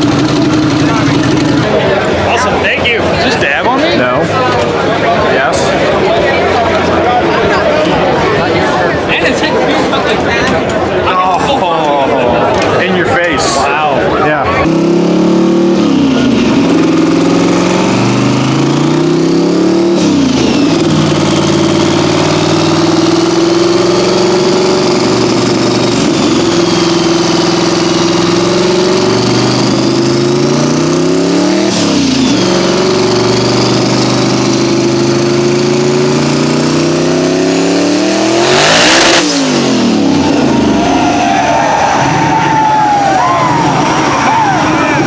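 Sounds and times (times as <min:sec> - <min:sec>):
car engine revving hard: 0:00.0 - 0:01.8, 0:14.5 - 0:45.0.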